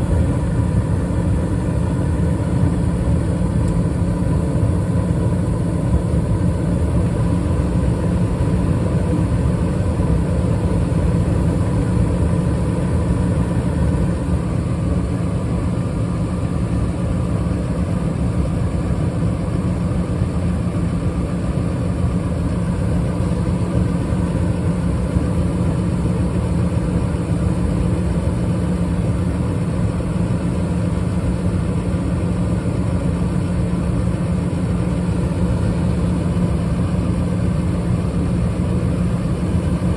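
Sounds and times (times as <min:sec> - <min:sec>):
gas furnace rumbling: 0:00.0 - 0:17.2.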